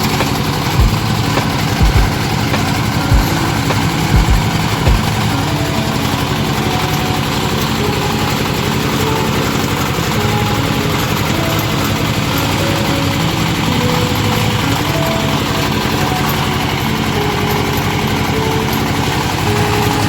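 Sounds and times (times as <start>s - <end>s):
drilling rig engine throbbing: 0.2s - 5.3s.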